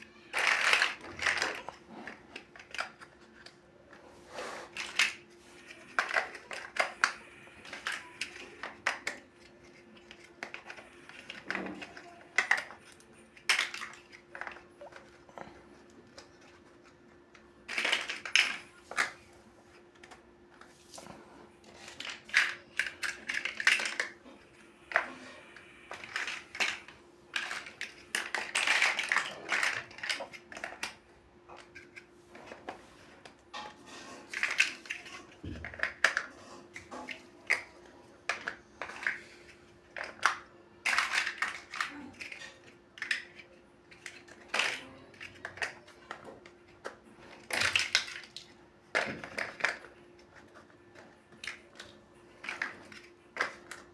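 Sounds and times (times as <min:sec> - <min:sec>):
faint steady hum: 0:00.0 - 0:53.9
plastic bricks clicking: 0:00.3 - 0:03.6, 0:04.7 - 0:15.2, 0:15.8 - 0:19.2, 0:21.8 - 0:24.2, 0:25.9 - 0:31.0, 0:34.3 - 0:36.3, 0:39.9 - 0:53.9.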